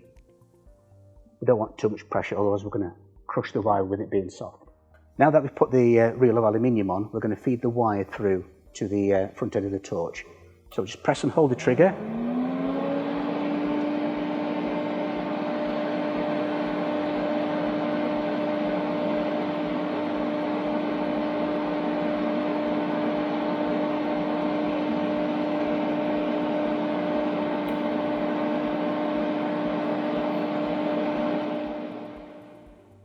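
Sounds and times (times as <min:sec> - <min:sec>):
wire feed motor humming: 0:10.7 - 0:33.0.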